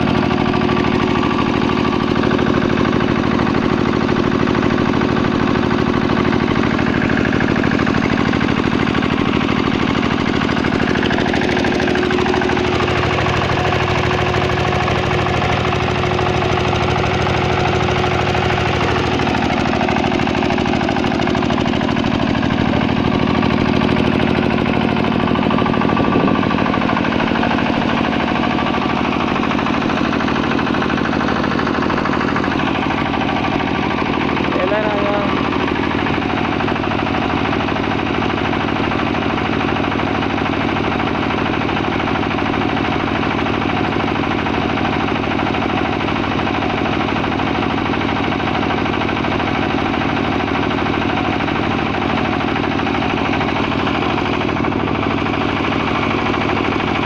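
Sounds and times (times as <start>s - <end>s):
diesel generator engine running: 0.0s - 57.0s.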